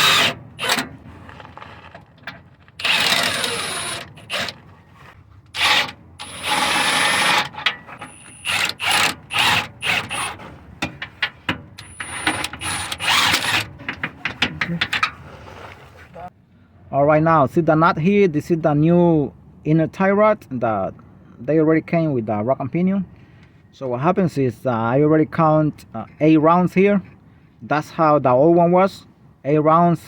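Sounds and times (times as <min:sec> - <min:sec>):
power tool spinning a nut: 0:00.0 - 0:00.8, 0:02.8 - 0:04.6, 0:05.6 - 0:10.5, 0:11.8 - 0:13.7.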